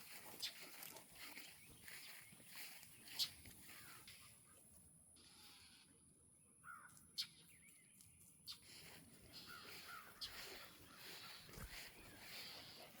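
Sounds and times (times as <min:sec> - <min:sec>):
faint bird calls: 0:00.4 - 0:04.6, 0:06.6 - 0:07.8, 0:08.5 - 0:13.0.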